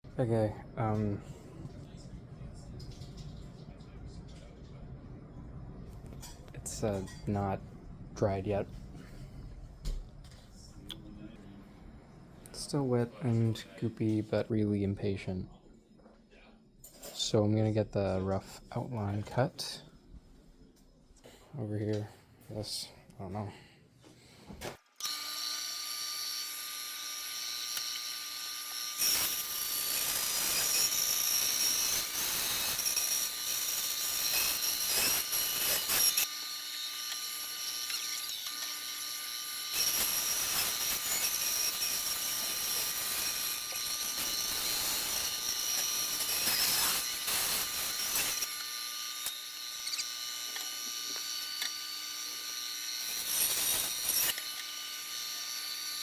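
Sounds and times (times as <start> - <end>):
small power tool cutting: 24.9 - 56.0.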